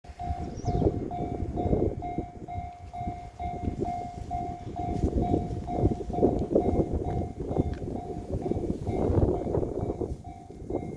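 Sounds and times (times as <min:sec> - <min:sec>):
level crossing warning bell: 0:00.1 - 0:10.9
wind buffeting microphone: 0:00.1 - 0:10.9.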